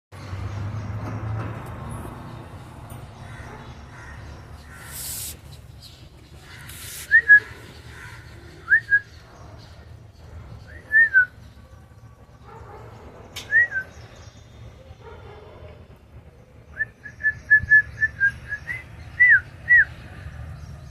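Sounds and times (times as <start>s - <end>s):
brief hiss: 4.8s - 5.6s.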